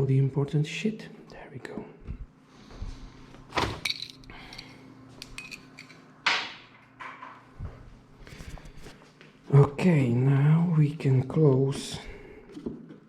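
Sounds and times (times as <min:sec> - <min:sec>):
metal parts clinking and knocking: 0:03.7 - 0:06.0.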